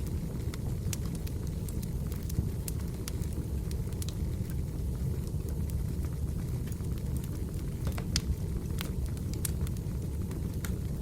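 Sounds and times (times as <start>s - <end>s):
fire crackles and pops: 0.0s - 11.0s
wood fire rumbling: 0.0s - 11.0s.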